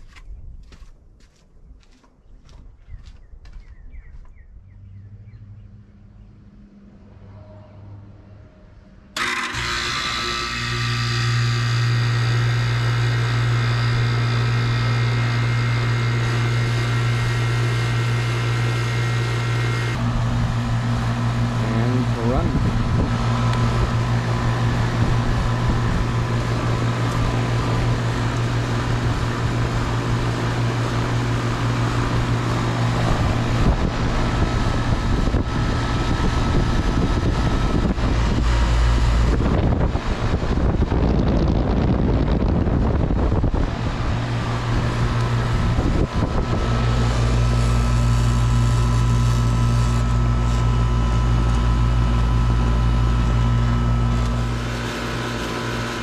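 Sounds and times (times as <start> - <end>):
air conditioner unit running: 9.2 - 56.0
low rumble: 19.9 - 54.4.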